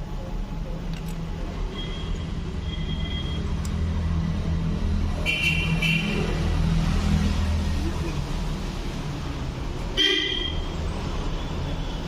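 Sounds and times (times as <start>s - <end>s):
road traffic rumbling: 0.0s - 12.0s.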